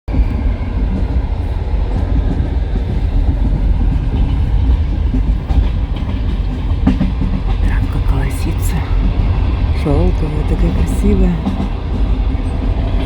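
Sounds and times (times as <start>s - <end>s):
wheels clacking over rail joints: 0.1s - 7.9s
train wheels rumbling on rails: 0.1s - 13.0s.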